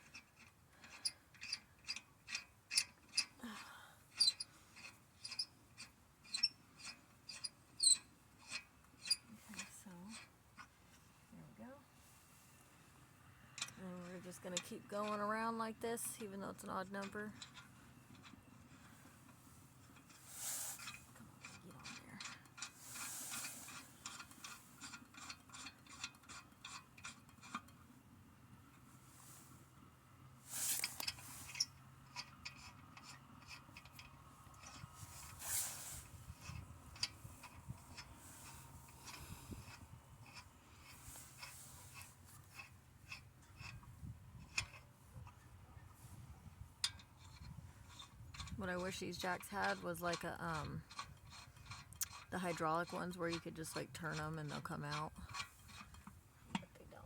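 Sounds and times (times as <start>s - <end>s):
metal ratchet clicks: 0.1s - 3.3s, 4.1s - 9.7s, 50.6s - 52.3s
metal scrape: 18.8s - 27.7s, 30.4s - 31.8s, 34.6s - 44.8s.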